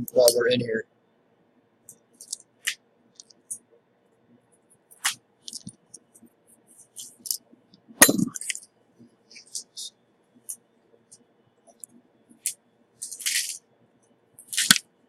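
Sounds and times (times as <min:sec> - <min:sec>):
tools clattering: 0:08.0 - 0:08.6, 0:13.0 - 0:13.6.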